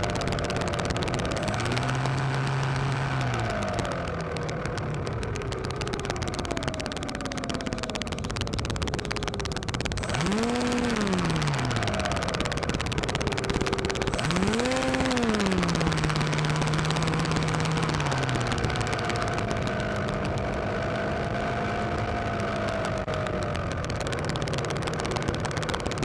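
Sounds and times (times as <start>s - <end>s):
model plane motor whining: 0.0s - 26.0s.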